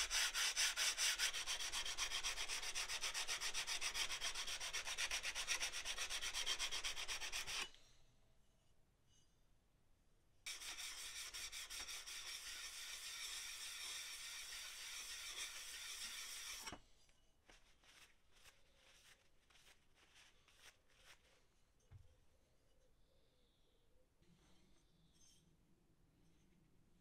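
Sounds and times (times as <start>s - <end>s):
plane iron scraping on abrasive: 3.8s - 7.8s, 10.5s - 16.8s
faint scrapes and clicks: 16.0s - 22.8s.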